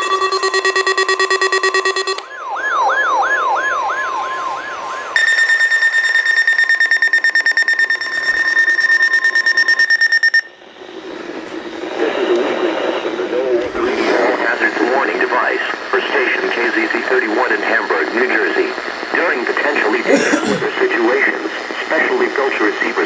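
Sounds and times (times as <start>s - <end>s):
high fast-pulsing beep: 0.0s - 2.2s, 5.2s - 10.7s
warbling alarm sweep: 0.0s - 14.7s.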